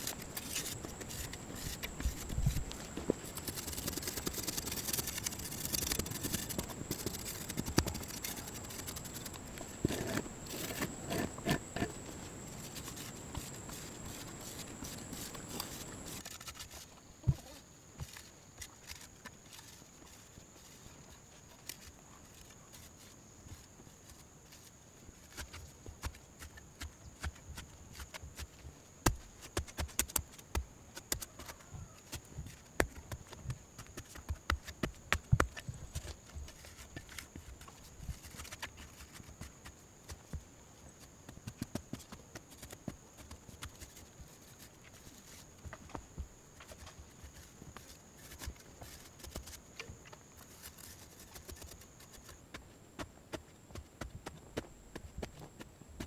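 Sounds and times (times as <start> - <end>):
soft rushing hiss: 0.0 - 16.2.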